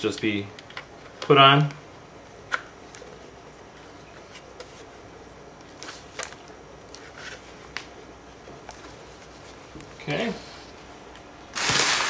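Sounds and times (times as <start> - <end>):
radio transmitter handling clicks: 0.5 - 1.8
packaging rustling: 11.5 - 12.0.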